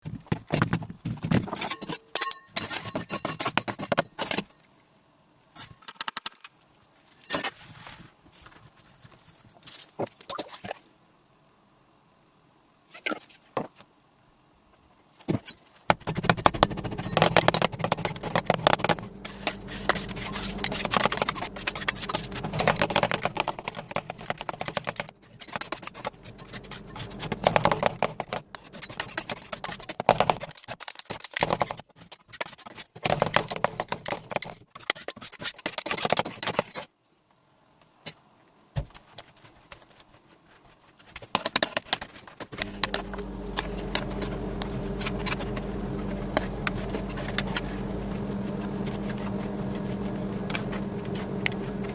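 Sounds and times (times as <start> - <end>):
metal spatulas chopping and scraping: 15.4 - 31.6
low steady hum: 16.0 - 30.4, 42.5 - 51.9.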